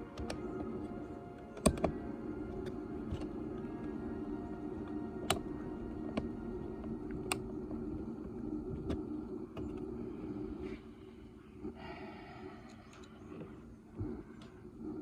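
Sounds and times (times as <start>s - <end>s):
small plastic parts clicking: 0.0s - 4.0s
steady low hum: 0.0s - 15.0s.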